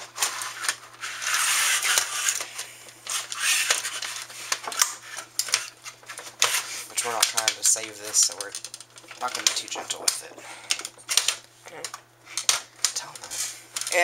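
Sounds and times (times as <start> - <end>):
scraping: 0.0 - 2.5, 3.1 - 8.5.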